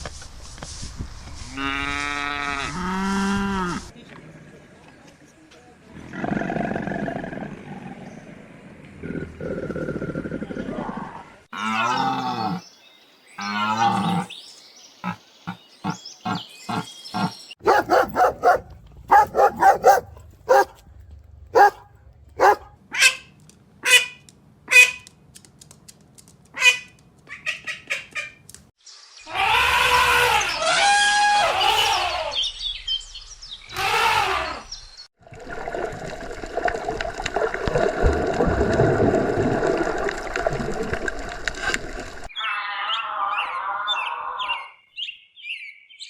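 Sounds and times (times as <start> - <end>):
farm animal calls: 15.8 - 20.8, 21.5 - 21.8, 22.4 - 23.2.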